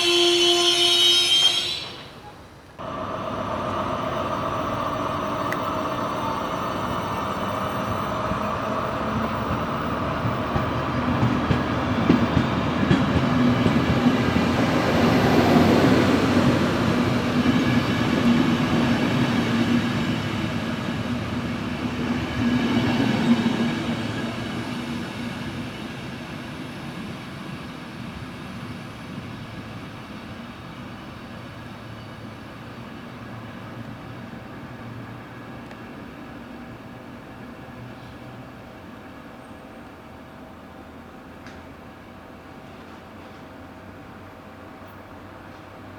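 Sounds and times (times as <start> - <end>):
train rumble and hum: 2.7 - 45.9
train wheels knocking: 8.3 - 19.8.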